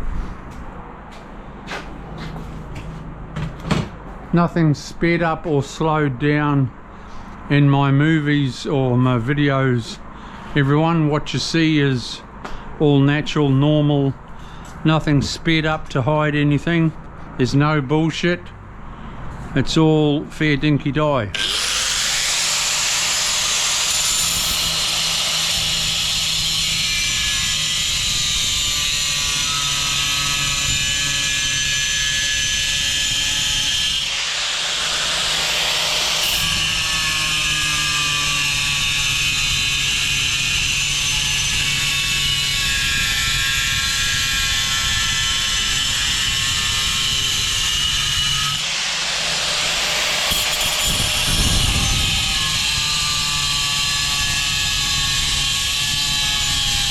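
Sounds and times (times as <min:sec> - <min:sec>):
power tool cutting tile: 0:21.3 - 0:56.9.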